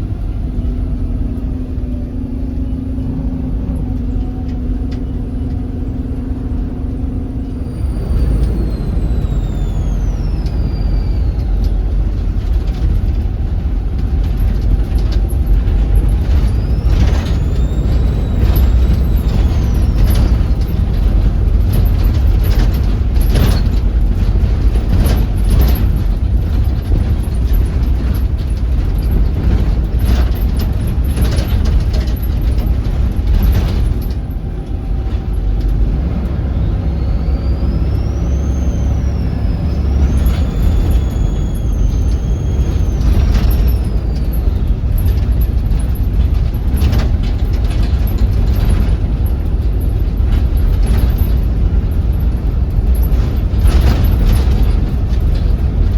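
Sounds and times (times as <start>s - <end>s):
diesel bus engine rumbling: 0.0s - 55.9s
turbocharger whistle: 7.0s - 13.0s, 15.4s - 24.3s, 36.2s - 45.4s
knocks and rattles: 7.6s - 35.9s, 37.0s - 55.9s.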